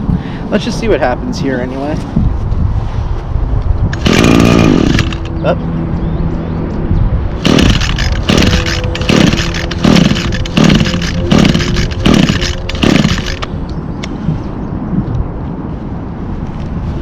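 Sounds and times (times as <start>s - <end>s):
recoil starter pulls: 4.0s - 5.3s, 7.5s - 13.5s.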